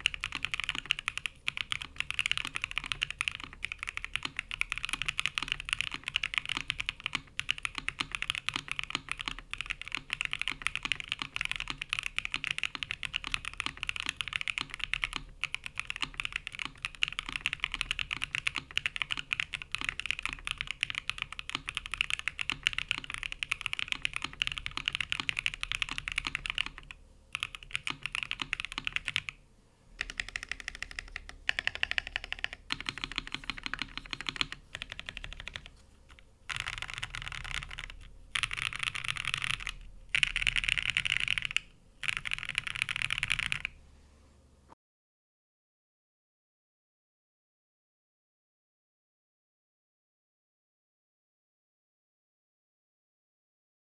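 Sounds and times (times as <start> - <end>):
typing on mechanical keyboard: 0.0 - 29.4, 30.0 - 43.8.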